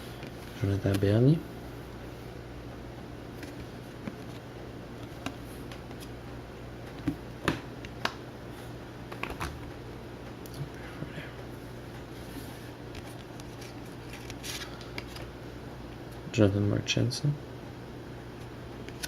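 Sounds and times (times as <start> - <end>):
steady low hum: 0.0 - 19.0
trading cards clicking and rustling: 13.0 - 15.3.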